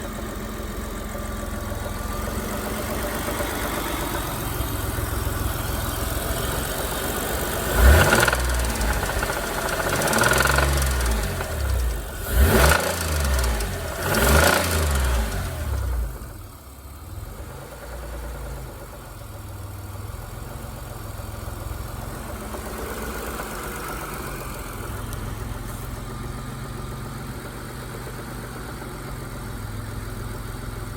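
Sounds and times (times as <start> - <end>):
car engine idling with knocking: 0.0 - 30.9
engine revving: 1.6 - 16.4.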